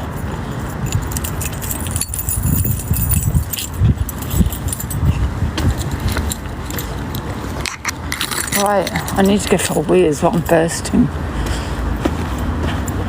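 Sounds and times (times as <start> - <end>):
keys jingling: 0.0 - 10.9
footsteps thudding: 3.3 - 7.5.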